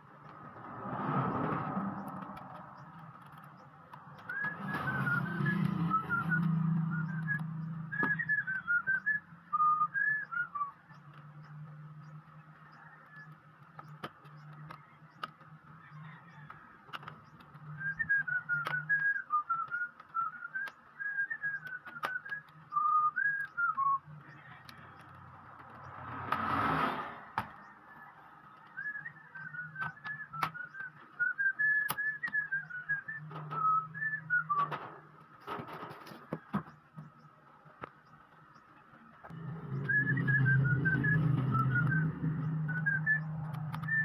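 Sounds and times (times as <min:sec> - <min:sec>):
small clicks: 0:01.2 - 0:26.6
person whistling a tune: 0:04.3 - 0:10.7, 0:17.8 - 0:24.0, 0:28.8 - 0:34.7.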